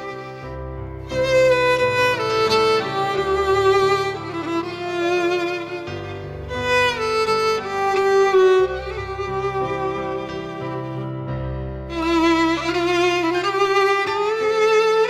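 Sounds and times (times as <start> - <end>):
sliding melody of held notes: 0.0 - 11.0.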